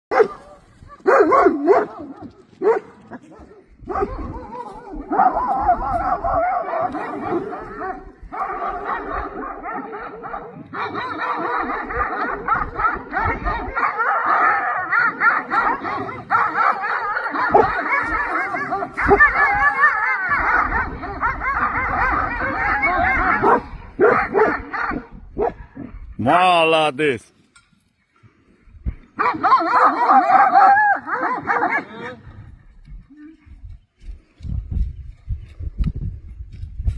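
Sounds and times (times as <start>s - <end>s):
dogs barking together: 0.1s - 26.0s, 29.1s - 32.2s.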